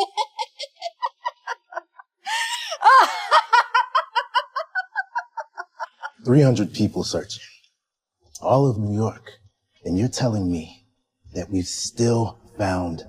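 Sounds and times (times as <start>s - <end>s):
woman laughing: 0.0s - 6.2s.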